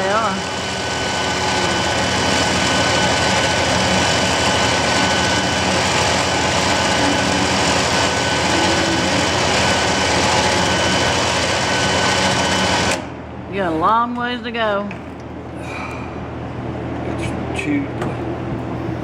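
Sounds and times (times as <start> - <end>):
electric winch motor whine: 0.0 - 13.5.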